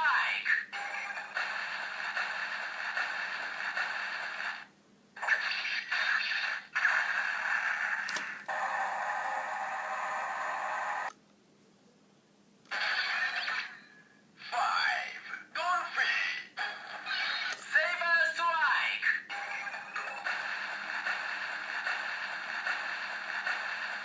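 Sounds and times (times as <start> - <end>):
toy electronic sound effects: 12.7 - 13.9.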